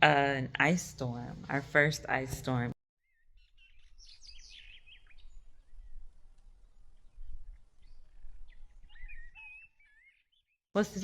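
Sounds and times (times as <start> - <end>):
small birds chirping: 3.0 - 11.0.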